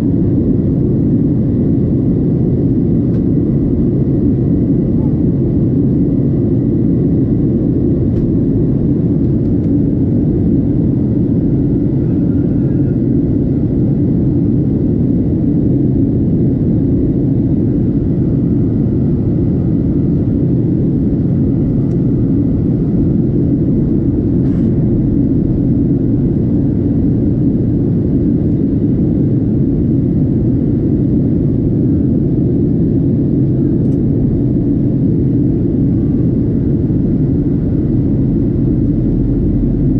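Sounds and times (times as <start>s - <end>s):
airplane cabin roar: 0.0s - 39.9s.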